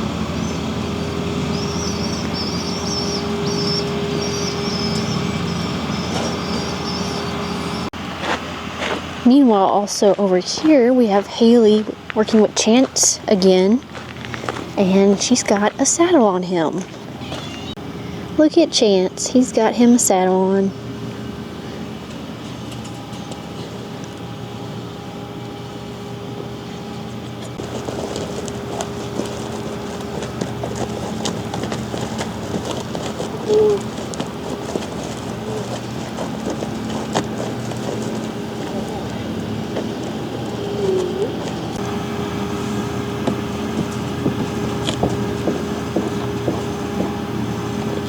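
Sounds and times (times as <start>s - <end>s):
motor humming: 0.0s - 7.9s, 19.6s - 48.0s.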